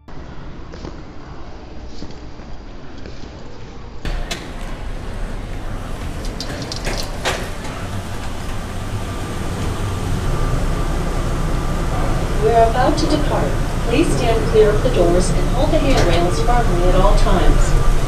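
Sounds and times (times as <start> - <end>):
shuttle train rumble and hum: 0.0 - 18.0
sharp clicks and knocks: 4.1 - 9.8.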